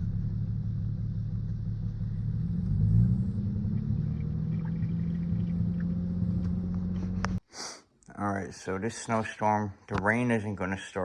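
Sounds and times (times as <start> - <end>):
car engine idling with misfire: 0.0 - 7.4.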